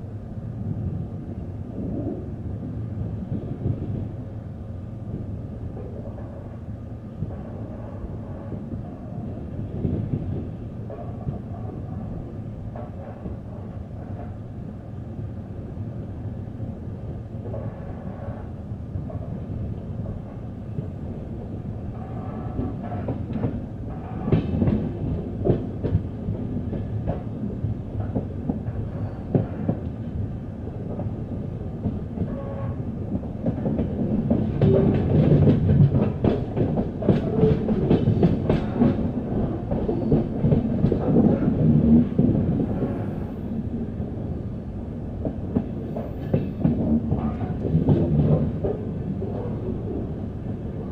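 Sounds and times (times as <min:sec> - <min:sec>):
train wheels clattering over rail joints: 0:31.8 - 0:43.0.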